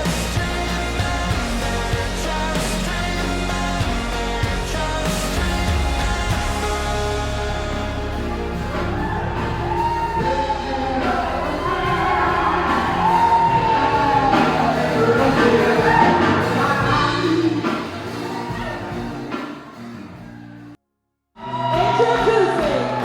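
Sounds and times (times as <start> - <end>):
music with singing voice: 0.0 - 20.8.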